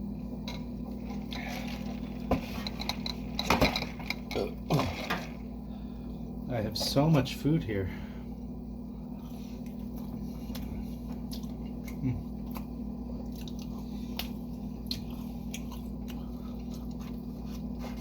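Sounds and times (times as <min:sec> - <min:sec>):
person chewing food: 0:09.2 - 0:18.0.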